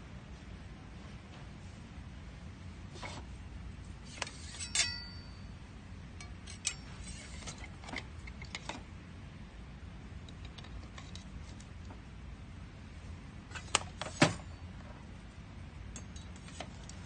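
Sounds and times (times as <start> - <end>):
low steady hum: 0.0 - 17.0
kitchenware clinking: 4.4 - 5.4.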